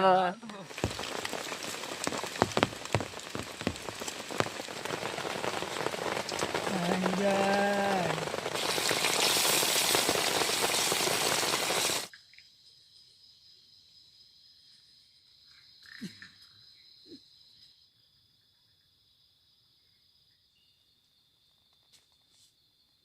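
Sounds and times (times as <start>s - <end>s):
heavy rain pouring: 0.4s - 12.1s.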